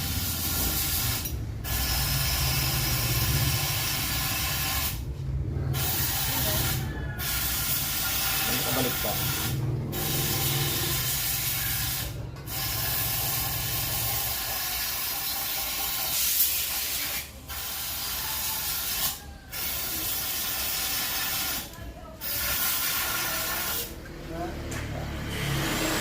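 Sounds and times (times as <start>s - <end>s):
hissing air spray: 0.0s - 5.0s, 5.7s - 24.0s.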